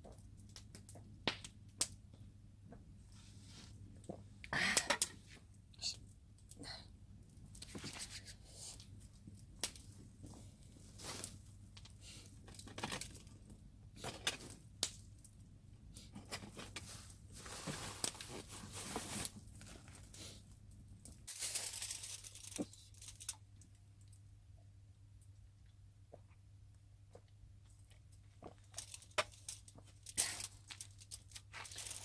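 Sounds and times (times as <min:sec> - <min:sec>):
packaging crinkling and tearing: 0:16.3 - 0:20.1, 0:21.3 - 0:23.4, 0:28.7 - 0:32.0.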